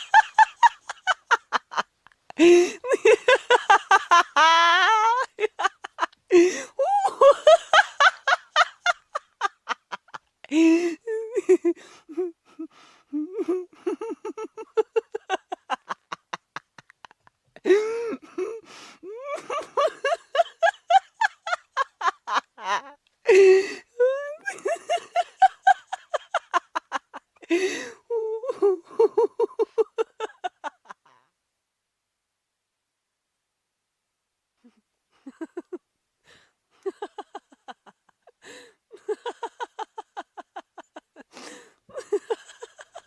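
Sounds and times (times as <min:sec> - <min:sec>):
person laughing hard: 0:00.0 - 0:31.2, 0:35.2 - 0:35.8, 0:36.8 - 0:43.0
gasping in-breaths: 0:02.4 - 0:02.9, 0:06.3 - 0:06.9, 0:10.5 - 0:11.1, 0:17.6 - 0:19.1, 0:23.3 - 0:24.0, 0:27.4 - 0:28.1, 0:38.4 - 0:38.8, 0:41.3 - 0:41.9.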